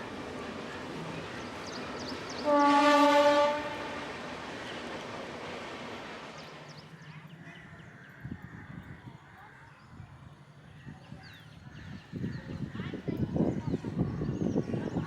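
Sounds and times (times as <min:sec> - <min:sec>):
horn blast: 0:02.4 - 0:04.0.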